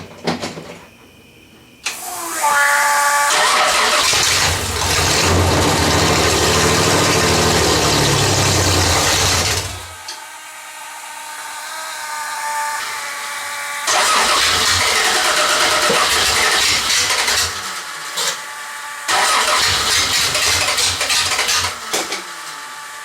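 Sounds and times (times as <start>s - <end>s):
engine cranking on starter: 3.3s - 9.9s, 13.9s - 17.8s, 19.1s - 22.3s.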